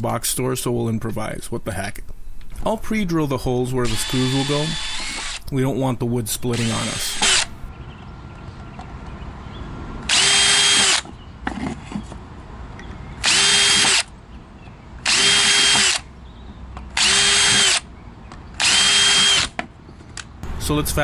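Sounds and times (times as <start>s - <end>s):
cordless drill whining: 3.8s - 5.5s, 6.5s - 7.7s, 10.1s - 11.0s, 13.2s - 14.1s, 15.1s - 16.0s, 17.0s - 17.8s, 18.6s - 19.5s.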